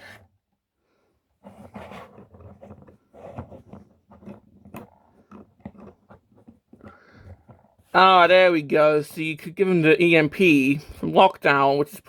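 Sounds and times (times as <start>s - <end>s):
plastic parts clicking and scraping: 1.4s - 8.0s.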